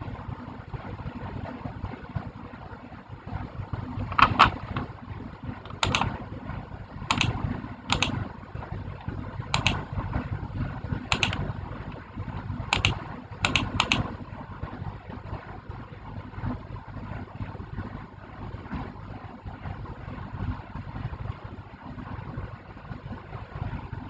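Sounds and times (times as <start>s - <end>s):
keys clicking: 5.7s - 6.1s, 7.1s - 8.1s, 9.6s - 9.8s, 11.1s - 11.4s, 12.8s - 14.0s.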